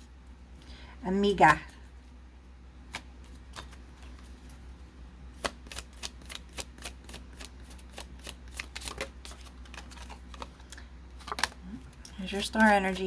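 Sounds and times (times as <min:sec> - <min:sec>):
cards being shuffled: 0:02.9 - 0:04.6, 0:05.4 - 0:13.0.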